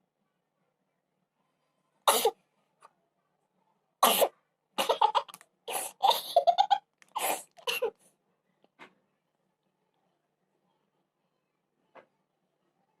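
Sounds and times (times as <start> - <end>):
woman coughing: 7.2 - 7.9.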